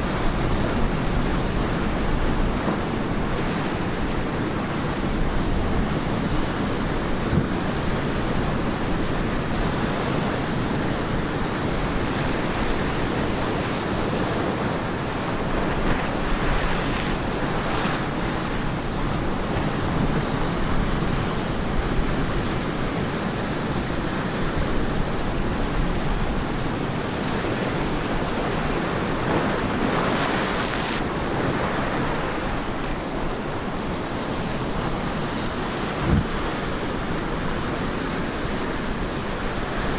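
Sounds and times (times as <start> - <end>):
ocean surf washing on beach: 0.0 - 39.9
waves breaking: 0.0 - 39.9.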